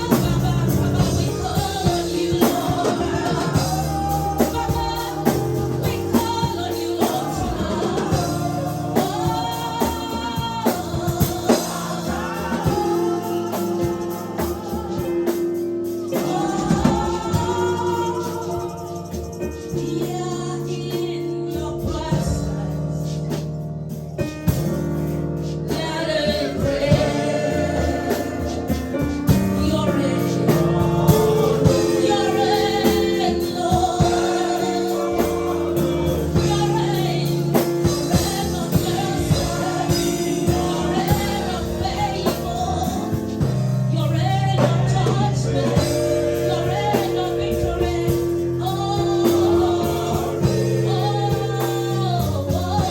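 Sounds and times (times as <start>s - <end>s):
woman singing: 0.0s - 8.3s, 9.0s - 11.5s, 19.8s - 22.6s, 43.9s - 52.9s
choir singing: 0.0s - 23.1s, 25.7s - 52.9s
live band with steady beat: 0.0s - 52.9s.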